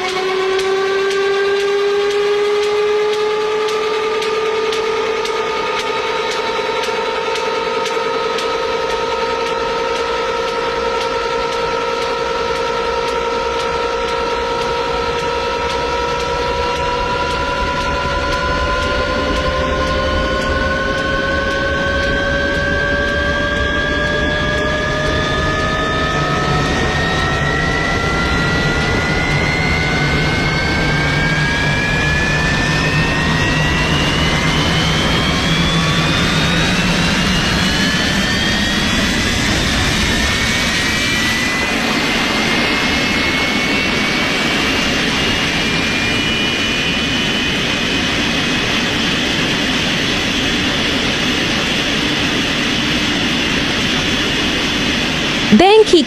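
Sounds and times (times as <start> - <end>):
jet engine whine: 0.0 - 55.5.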